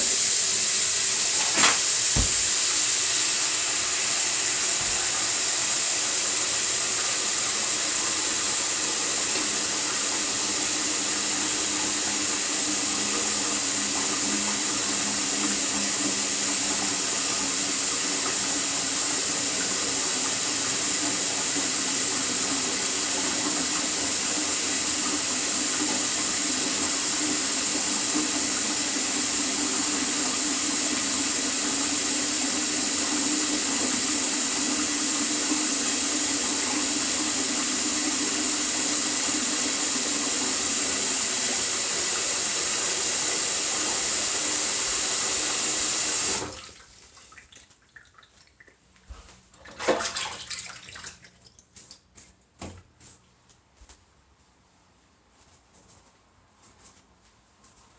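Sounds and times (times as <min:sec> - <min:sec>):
tap running into sink: 0:01.2 - 0:03.2, 0:04.6 - 0:05.4
water drips: 0:47.2 - 0:52.0.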